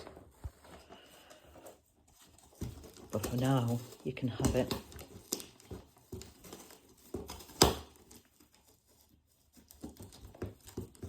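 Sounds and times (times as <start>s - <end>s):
dog chewing and tearing: 2.1s - 11.0s.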